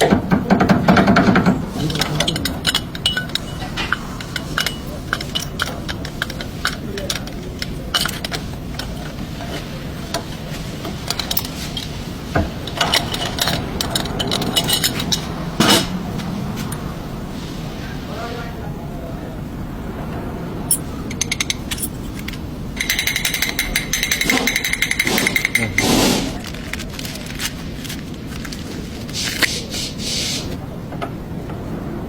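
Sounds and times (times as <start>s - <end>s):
metallic clicks and knocks: 0.0s - 15.9s, 20.7s - 26.0s
person talking: 25.1s - 26.5s.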